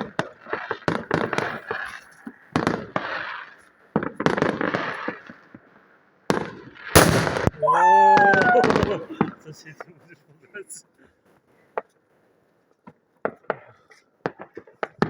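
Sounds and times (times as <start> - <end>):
firecrackers banging and crackling: 0.0 - 5.7, 6.3 - 9.4, 12.9 - 15.0.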